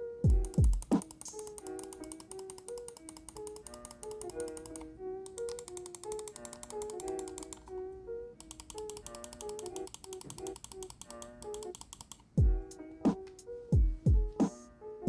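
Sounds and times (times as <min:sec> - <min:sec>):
background music: 0:00.0 - 0:15.0
heavy kick drum: 0:00.3 - 0:00.9, 0:12.4 - 0:12.7, 0:13.8 - 0:14.4
mouse clicking rapidly: 0:00.3 - 0:07.7, 0:08.4 - 0:12.4.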